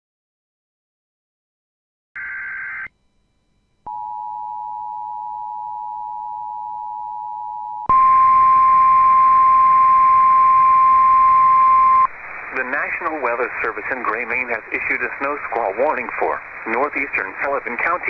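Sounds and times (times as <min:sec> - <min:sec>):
steady warning tone: 0:02.9 - 0:12.1
radio hiss: 0:11.9 - 0:18.0.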